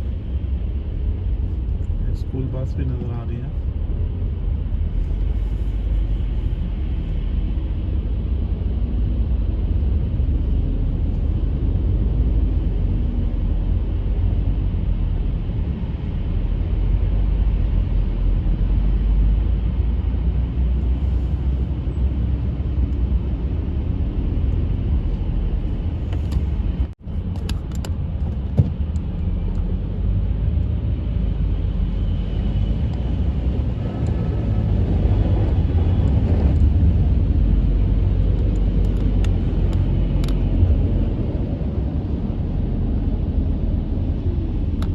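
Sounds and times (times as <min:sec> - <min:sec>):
car road and engine rumble: 0:00.0 - 0:44.9.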